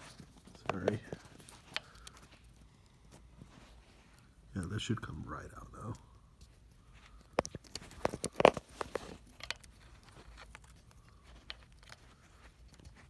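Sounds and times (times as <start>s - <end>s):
plastic clicks and cracks: 0.0s - 2.6s, 5.8s - 13.0s
plastic rustling: 6.8s - 13.0s.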